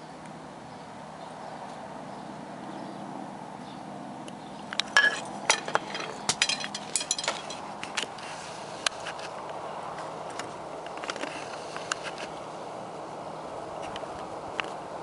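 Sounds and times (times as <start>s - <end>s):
sharp clicks and clinks: 4.8s - 7.7s.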